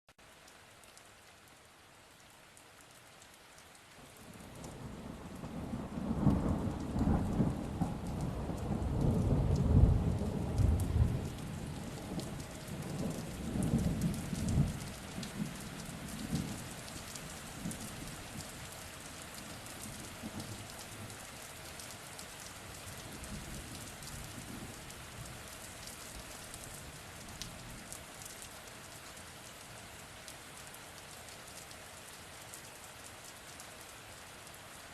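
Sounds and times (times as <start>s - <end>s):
rain falling: 0.2s - 34.9s
rolling thunder: 4.8s - 15.6s.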